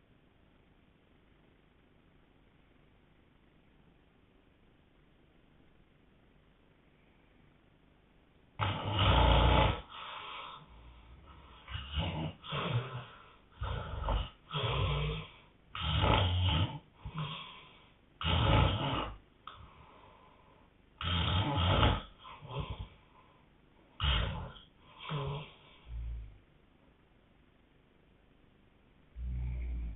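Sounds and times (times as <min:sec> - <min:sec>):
man snoring loudly: 0:08.6 - 0:10.7, 0:11.3 - 0:17.6, 0:18.2 - 0:19.2, 0:21.0 - 0:22.9, 0:24.0 - 0:26.3, 0:29.2 - 0:29.9.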